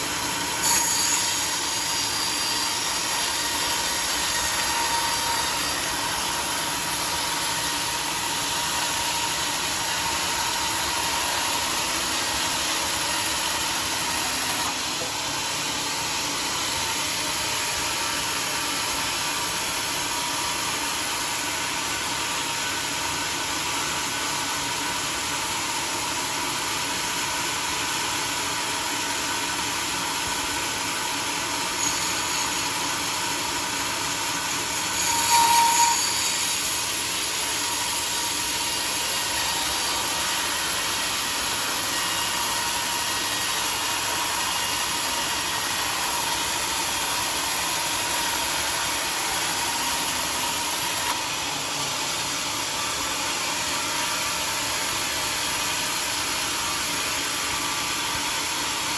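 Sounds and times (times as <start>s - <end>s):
sawmill running with whine: 0.0s - 58.9s.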